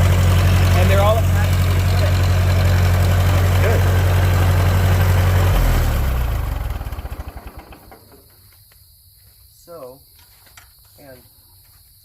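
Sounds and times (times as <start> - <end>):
tractor engine idling and stopping: 0.0 - 8.5.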